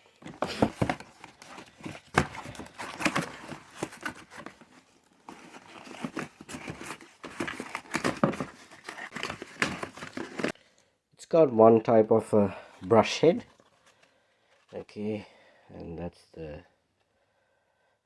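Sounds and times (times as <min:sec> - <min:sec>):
packaging crinkling and rustling: 0:00.1 - 0:10.6.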